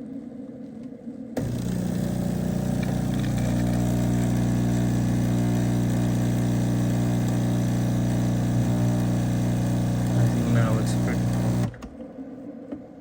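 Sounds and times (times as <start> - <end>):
steam hissing: 1.4 - 11.8
espresso machine buzzing: 1.4 - 11.9.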